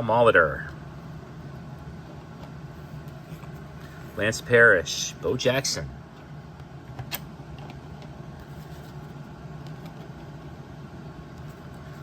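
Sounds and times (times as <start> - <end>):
low background hum: 0.0 - 12.0.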